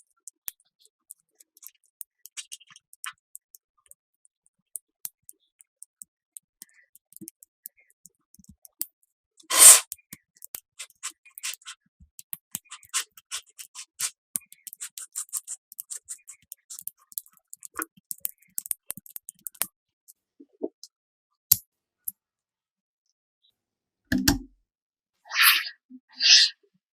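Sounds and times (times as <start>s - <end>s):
small clicks and taps: 0.0s - 9.2s, 9.8s - 20.9s.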